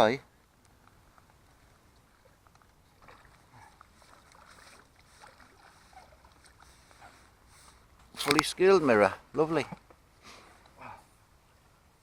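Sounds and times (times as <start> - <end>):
faint water splashing: 1.1 - 8.8
small clicks: 8.2 - 8.6.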